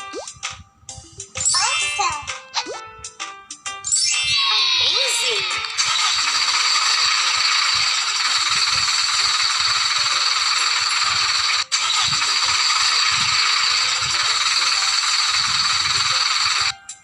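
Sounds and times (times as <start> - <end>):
small motor rattling and whining: 5.2 - 16.7.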